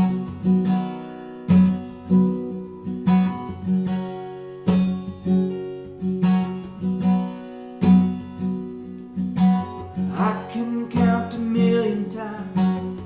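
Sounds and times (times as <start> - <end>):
acoustic guitar strumming: 0.0 - 13.0.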